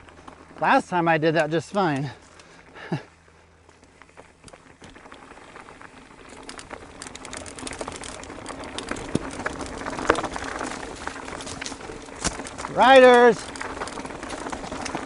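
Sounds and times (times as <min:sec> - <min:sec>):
bike rattling: 0:00.0 - 0:15.0
tyres crunching over loose rock: 0:03.8 - 0:15.0.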